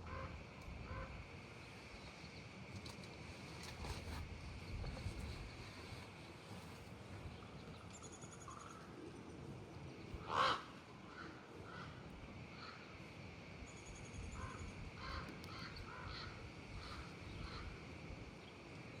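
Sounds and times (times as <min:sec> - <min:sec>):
crow cawing: 0:00.0 - 0:01.2, 0:10.2 - 0:12.9, 0:14.4 - 0:17.8
faint outdoor background: 0:00.0 - 0:19.0.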